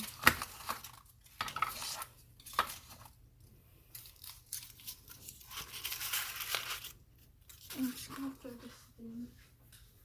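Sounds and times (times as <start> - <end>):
packaging crinkling and tearing: 0.0 - 3.2, 3.8 - 8.4.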